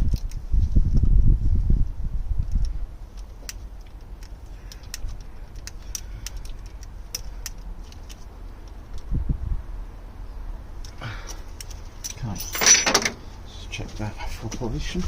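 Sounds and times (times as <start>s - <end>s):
spanners clinking on metal fittings: 12.4s - 13.2s.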